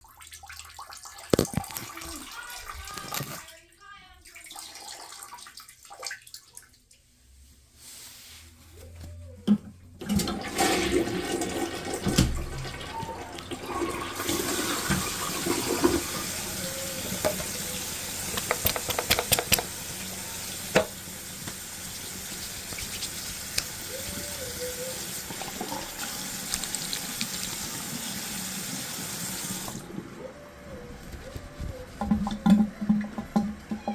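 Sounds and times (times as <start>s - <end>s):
toilet flushing water: 10.0s - 30.8s, 32.0s - 33.9s
toilet handle click: 18.3s - 19.7s.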